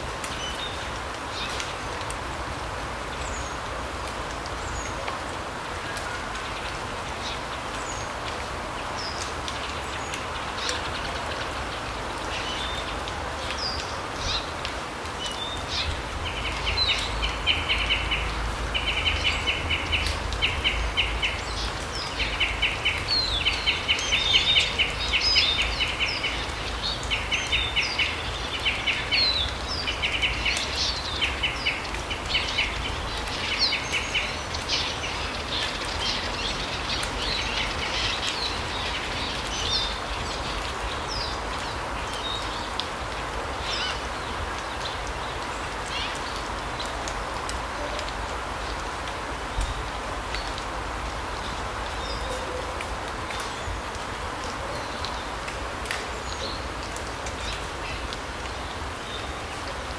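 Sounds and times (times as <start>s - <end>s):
small birds trilling and chirping: 6.0s - 47.7s.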